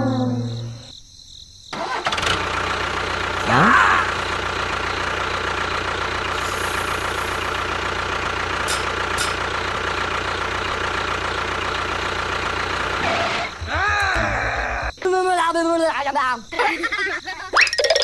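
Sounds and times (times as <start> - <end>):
engine idling with whine: 1.7 - 15.0.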